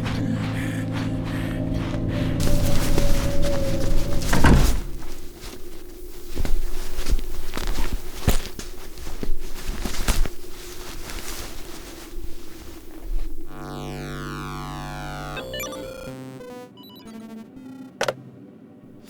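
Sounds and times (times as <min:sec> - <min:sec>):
music with held tones: 0:00.0 - 0:04.4, 0:13.5 - 0:18.0
foley footsteps: 0:00.0 - 0:14.3
steady low hum: 0:00.0 - 0:19.0
heavy thud: 0:02.0 - 0:05.8.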